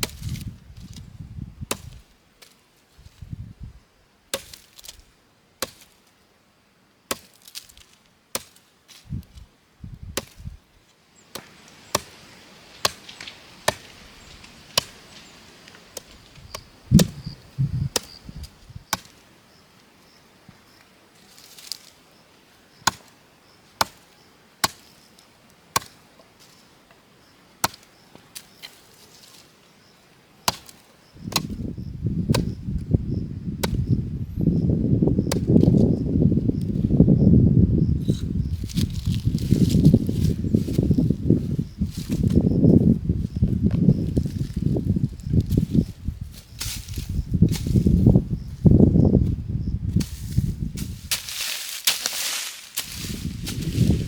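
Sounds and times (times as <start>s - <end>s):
blade chopping wood: 1.7s - 2.5s, 4.3s - 5.0s, 5.6s - 6.0s, 7.1s - 8.6s, 10.2s - 10.5s, 11.3s - 12.2s, 12.8s - 15.1s, 18.9s - 19.2s, 22.8s - 23.1s, 23.8s - 24.0s, 24.6s - 24.9s, 25.8s - 26.0s, 27.6s - 27.9s, 30.5s - 31.7s, 32.3s - 32.6s, 33.6s - 34.0s, 35.2s - 35.8s, 51.1s - 53.6s.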